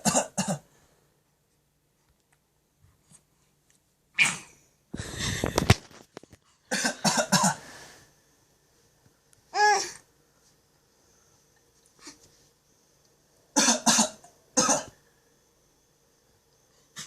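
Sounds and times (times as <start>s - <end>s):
baby coughing: 0.0s - 0.6s, 6.7s - 7.6s, 13.6s - 15.0s.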